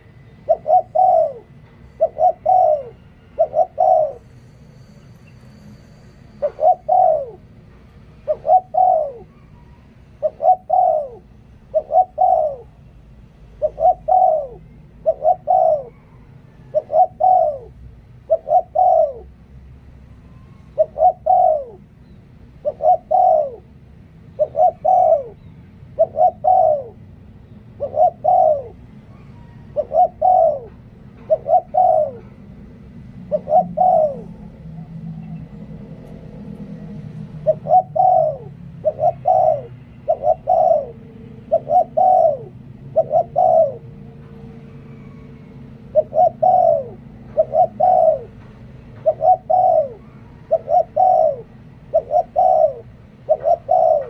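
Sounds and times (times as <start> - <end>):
dove cooing: 0.0 - 4.5, 6.3 - 12.8, 13.4 - 19.6, 20.2 - 54.0.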